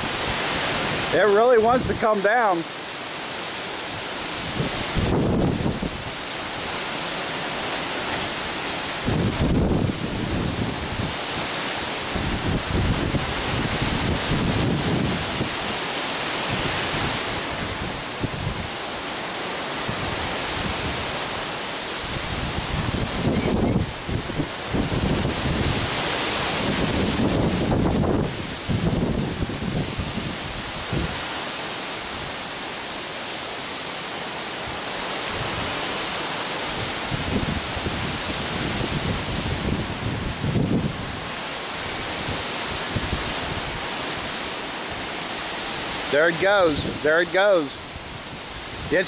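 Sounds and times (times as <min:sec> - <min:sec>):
choppy water: 0:00.0 - 0:49.0
storm wind rushing: 0:03.8 - 0:31.4, 0:34.6 - 0:49.0
wind buffeting microphone: 0:04.0 - 0:19.1, 0:19.7 - 0:31.4, 0:36.6 - 0:47.2.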